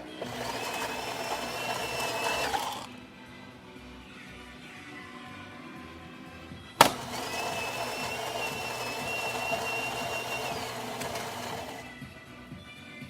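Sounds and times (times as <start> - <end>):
coffee grinder whining: 0.0 - 3.0, 6.8 - 12.2.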